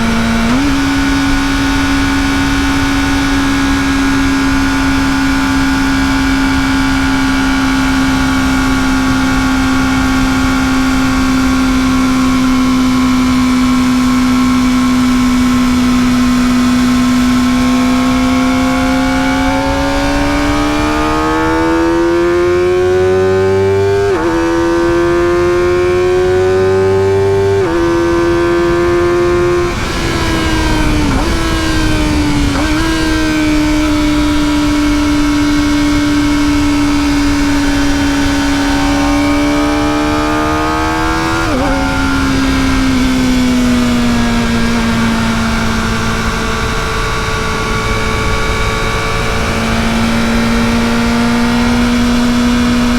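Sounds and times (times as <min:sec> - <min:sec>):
motorcycle engine accelerating: 0:00.0 - 0:52.9
rush of wind: 0:00.0 - 0:52.9.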